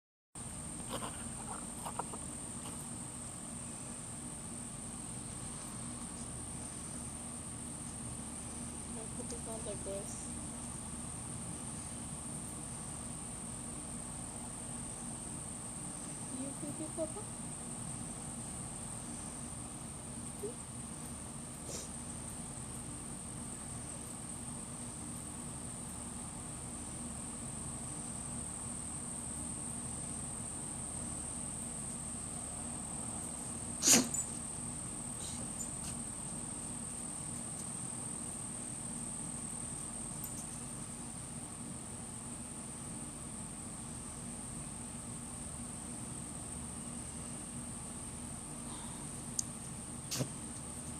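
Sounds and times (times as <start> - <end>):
dog snorting: 0.8 - 2.9, 33.8 - 34.3
dog sneezing: 21.6 - 22.0, 33.8 - 34.4, 50.0 - 50.4.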